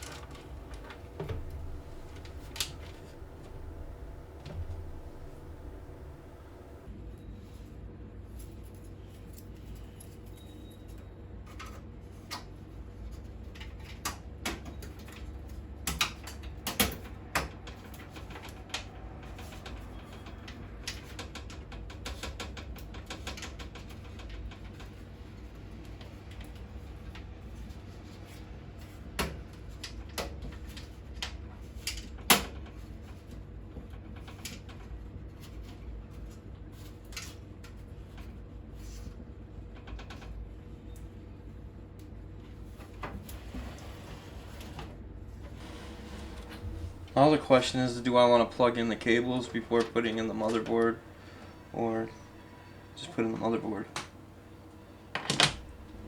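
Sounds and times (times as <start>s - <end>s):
steady low hum: 0.0s - 6.9s, 45.6s - 56.0s.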